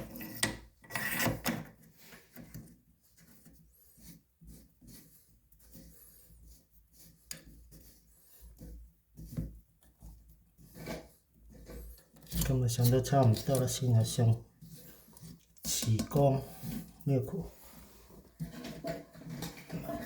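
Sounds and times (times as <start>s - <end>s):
plastic scraping and knocking: 18.2s - 20.0s.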